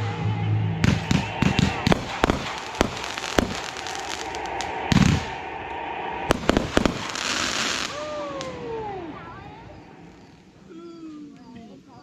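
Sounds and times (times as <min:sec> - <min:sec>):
falling tone: 0:00.0 - 0:10.7
deep firework boom: 0:00.8 - 0:09.9
fireworks banging: 0:00.8 - 0:10.6
firework crackling hiss: 0:00.8 - 0:10.7.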